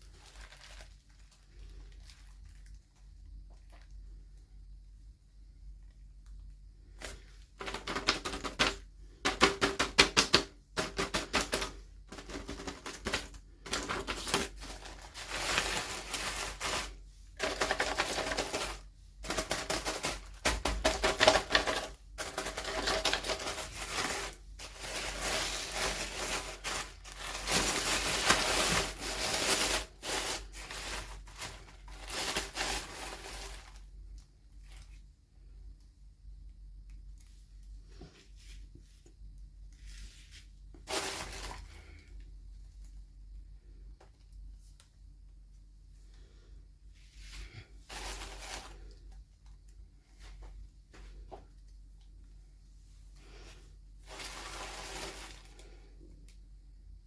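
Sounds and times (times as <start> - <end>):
packaging crackling and clicking: 7.6 - 33.8.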